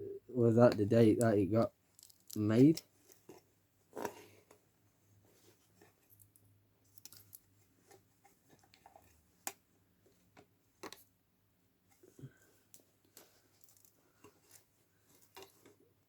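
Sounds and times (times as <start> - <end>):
faint low hum: 0.0 - 1.8
small clicks and taps of handling: 1.9 - 4.6, 5.8 - 11.1, 11.9 - 15.8.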